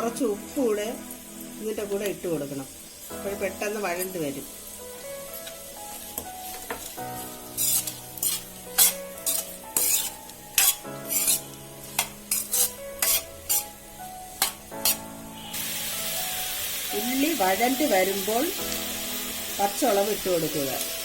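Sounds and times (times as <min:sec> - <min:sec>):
onions sizzling in oil: 0:00.0 - 0:21.0
spatula scraping a pan: 0:06.0 - 0:15.6.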